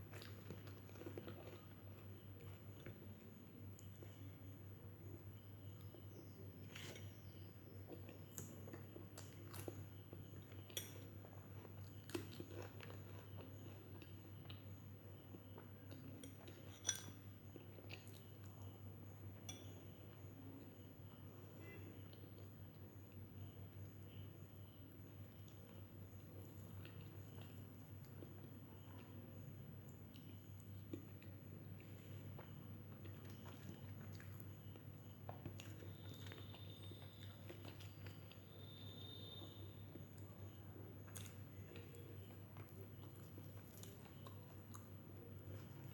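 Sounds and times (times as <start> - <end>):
quiet chewing: 0.0 - 45.9
person chewing: 42.6 - 44.9.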